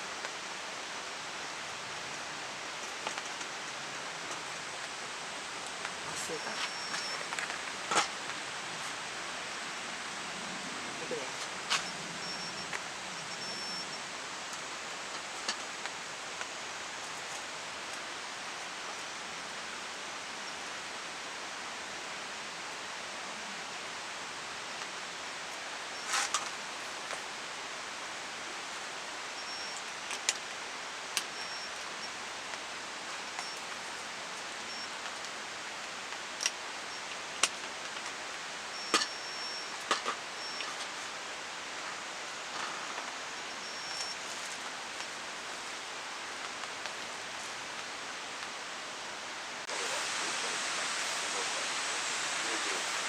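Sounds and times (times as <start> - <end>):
campfire crackling and popping: 29.7 - 43.2
fire hissing: 49.6 - 53.0.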